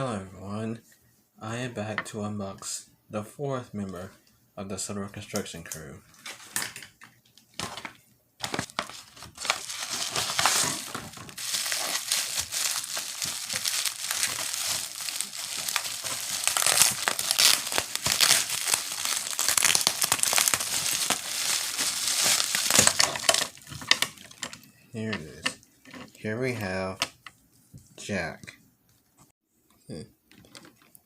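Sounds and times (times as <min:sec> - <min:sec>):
packaging crinkling and tearing: 0:07.6 - 0:24.5.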